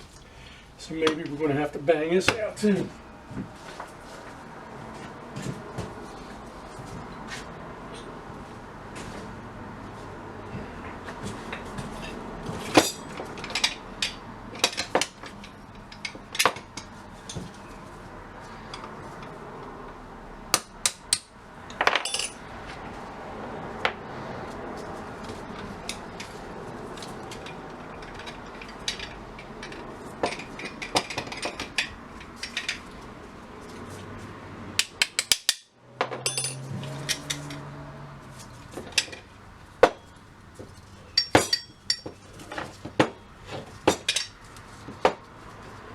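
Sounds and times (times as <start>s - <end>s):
hammer tapping metal parts: 11.5s - 17.7s, 20.5s - 22.8s, 27.0s - 33.0s, 34.7s - 37.7s, 38.7s - 40.1s, 41.1s - 45.2s.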